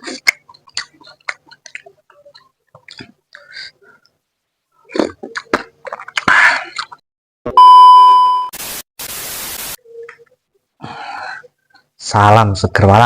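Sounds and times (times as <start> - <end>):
loud steady beep: 7.5 - 8.6
static hiss: 8.6 - 9.9.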